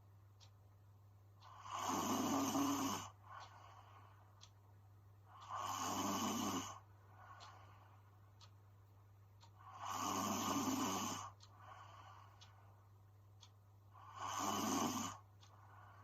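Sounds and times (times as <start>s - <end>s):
faint breath: 1.4s - 4.5s, 6.5s - 8.2s, 9.6s - 12.8s, 14.0s - 16.0s
woman snoring: 1.5s - 3.2s, 5.4s - 6.8s, 9.7s - 11.4s, 14.0s - 15.2s.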